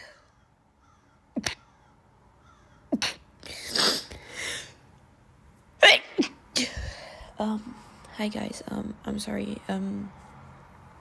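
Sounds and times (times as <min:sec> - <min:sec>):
woman sneezing: 0:02.9 - 0:04.2, 0:05.8 - 0:06.8
sharp in-breath: 0:03.5 - 0:04.8.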